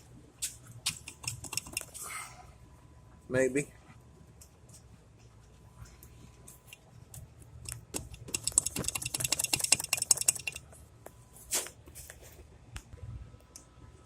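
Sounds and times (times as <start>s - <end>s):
ratchet wrench clicking: 7.7s - 10.6s.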